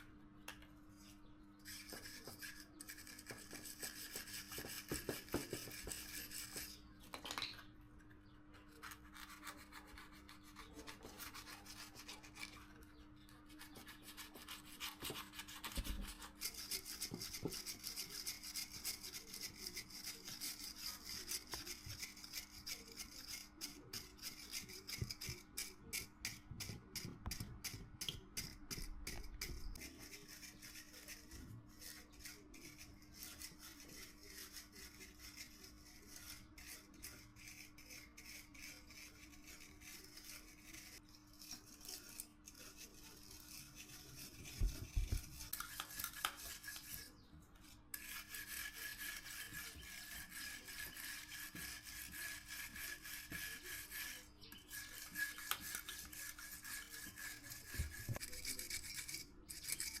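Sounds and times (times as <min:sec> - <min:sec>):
scraping on metal: 0:28.8 - 1:00.0.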